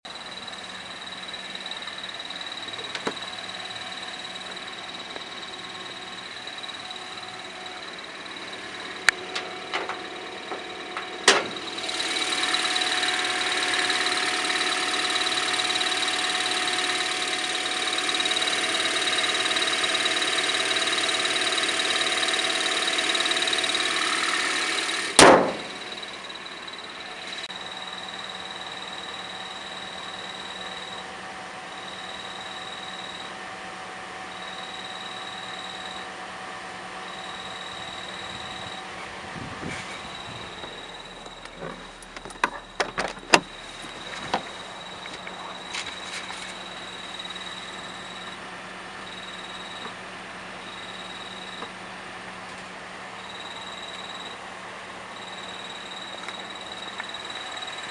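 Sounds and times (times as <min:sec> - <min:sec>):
car engine idling: 0:00.0 - 0:57.9.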